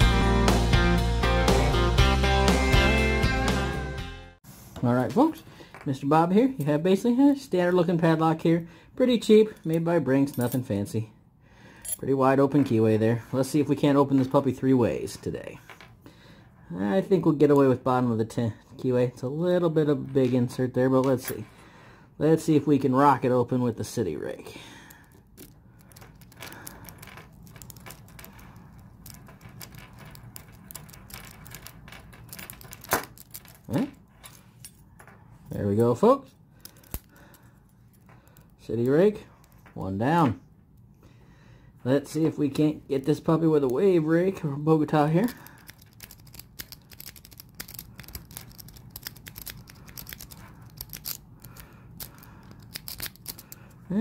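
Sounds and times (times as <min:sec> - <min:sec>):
lock pick raking pins: 0:24.8 - 0:35.6, 0:36.5 - 0:39.7, 0:45.0 - 0:54.0.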